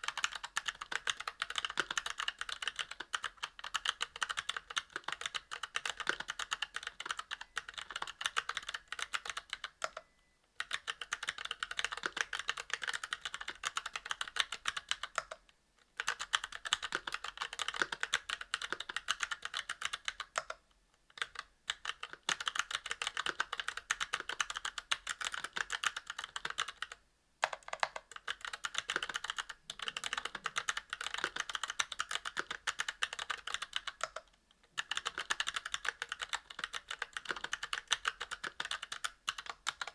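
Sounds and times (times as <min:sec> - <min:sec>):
fast typing on mechanical keyboard: 0:00.0 - 0:10.0, 0:10.6 - 0:15.4, 0:16.0 - 0:20.6, 0:21.2 - 0:39.9.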